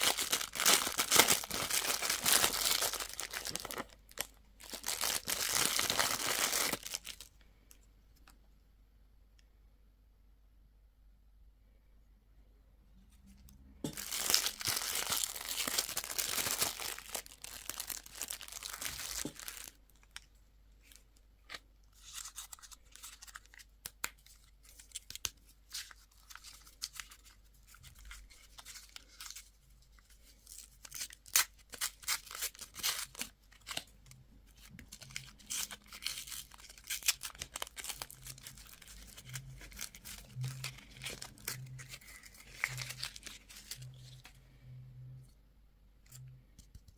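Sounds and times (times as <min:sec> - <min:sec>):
wrapper tearing: 0:00.0 - 0:07.3, 0:13.9 - 0:20.2, 0:30.4 - 0:33.9, 0:34.6 - 0:44.3
packaging crinkling: 0:00.0 - 0:07.4, 0:13.9 - 0:20.3, 0:30.0 - 0:44.3.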